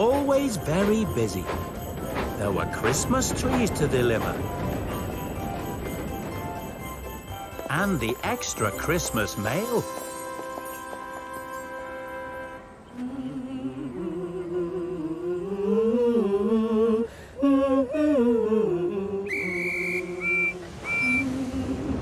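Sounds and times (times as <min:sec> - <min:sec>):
high whistle toots: 0:19.3 - 0:21.3.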